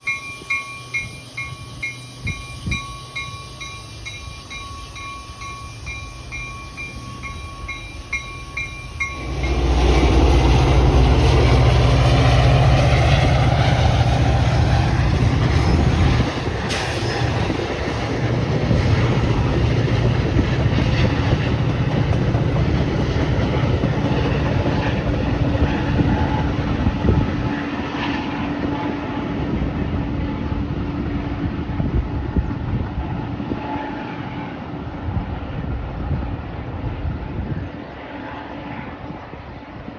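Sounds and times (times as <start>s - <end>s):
bell ringing: 0.0s - 9.6s
train wheels clattering on rails: 0.0s - 29.8s
locomotive engine running: 0.1s - 27.3s.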